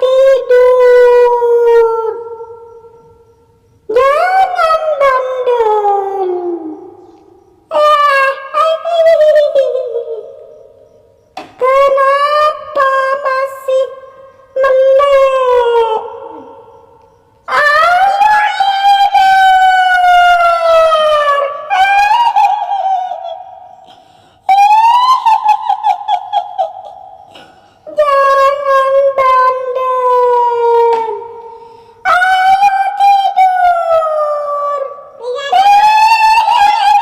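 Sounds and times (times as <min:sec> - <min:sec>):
woman wailing with echo: 0:17.5 - 0:31.4, 0:32.1 - 0:37.0.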